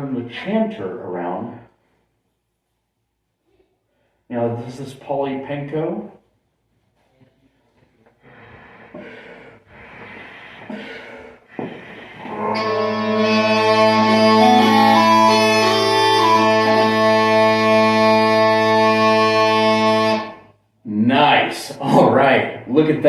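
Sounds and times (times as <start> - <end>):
breaths blown into bagpipe bag: 11.8 - 20.6
bagpipe chanter melody: 12.2 - 20.5
bagpipe drones humming: 12.2 - 20.5.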